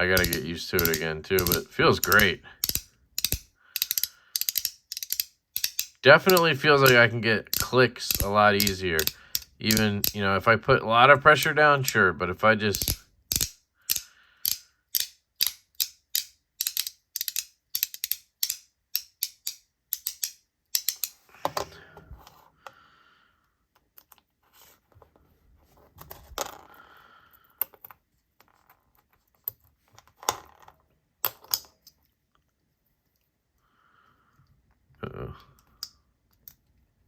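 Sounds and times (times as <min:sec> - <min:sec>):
fidget toy clicking: 0:00.0 - 0:10.2, 0:11.2 - 0:12.1, 0:12.7 - 0:21.2.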